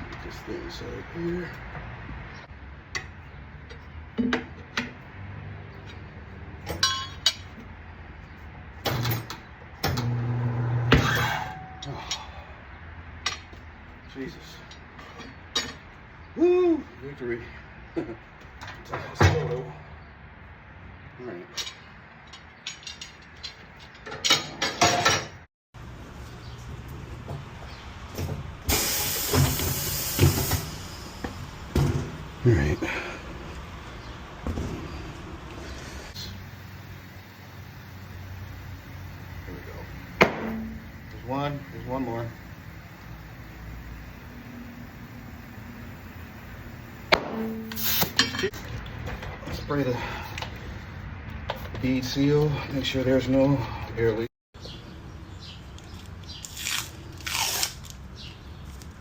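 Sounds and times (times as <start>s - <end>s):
metal tools clinking on wheel rim: 5.8s - 7.7s, 11.0s - 12.5s, 13.2s - 16.0s, 21.4s - 25.4s, 37.6s - 50.6s
tools clattering: 6.7s - 7.6s, 21.6s - 25.4s, 47.1s - 49.6s
compressed air hissing: 28.7s - 31.2s, 35.8s - 48.3s
steady low hum: 36.1s - 48.4s.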